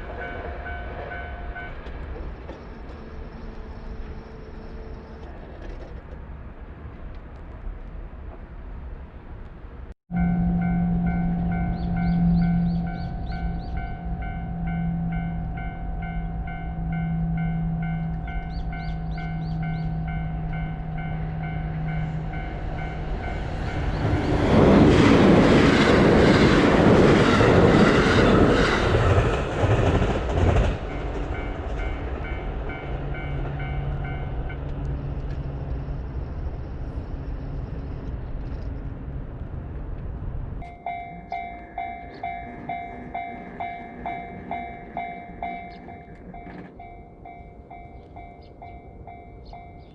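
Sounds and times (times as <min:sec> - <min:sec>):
train passing: 0:00.0 - 0:49.9
level-crossing warning bell ringing: 0:10.1 - 0:25.0, 0:30.9 - 0:34.6, 0:40.6 - 0:49.9.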